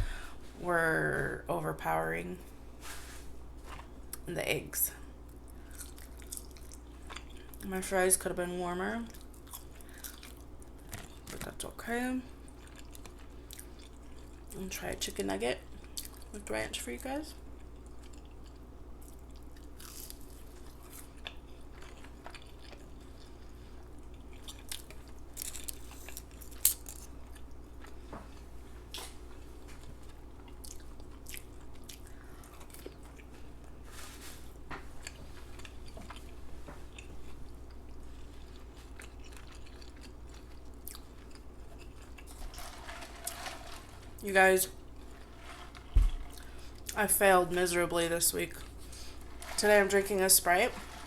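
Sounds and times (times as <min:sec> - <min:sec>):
steady low hum: 0:00.0 - 0:51.0
mouth chewing with wet clicks: 0:05.3 - 0:07.6, 0:12.4 - 0:14.6, 0:15.8 - 0:16.3, 0:17.5 - 0:29.1, 0:30.0 - 0:33.4, 0:35.0 - 0:42.4.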